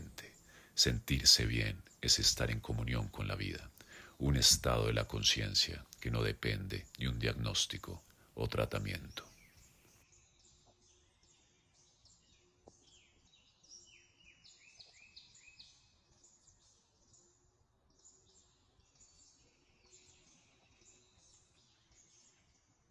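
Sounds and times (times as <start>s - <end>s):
birds chirping and whistling: 0.0s - 8.0s.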